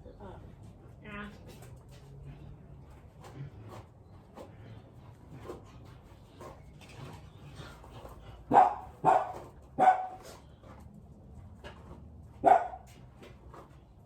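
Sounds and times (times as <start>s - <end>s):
dog barking: 8.5s - 10.4s, 12.4s - 12.9s.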